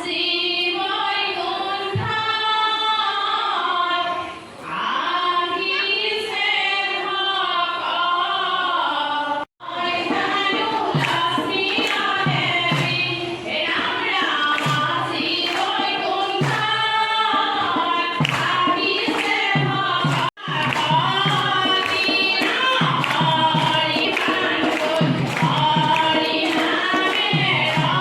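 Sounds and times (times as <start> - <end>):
group singing a devotional chant: 0.0 - 28.0
rhythmic beat of sharp strokes: 9.6 - 28.0.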